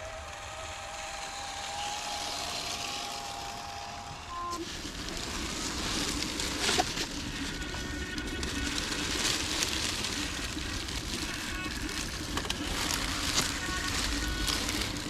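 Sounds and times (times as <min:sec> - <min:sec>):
electric motor whining: 0:00.0 - 0:15.0
tyres crunching over gravel: 0:00.7 - 0:15.0.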